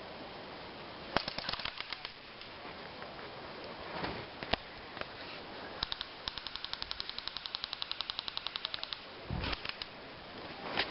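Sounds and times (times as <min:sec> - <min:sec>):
airsoft rifle firing: 0:01.2 - 0:02.2, 0:05.8 - 0:09.9.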